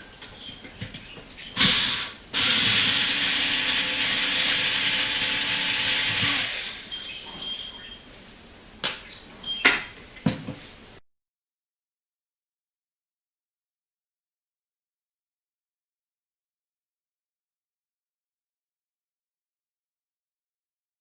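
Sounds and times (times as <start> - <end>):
small electric motor humming: 1.6 - 6.9.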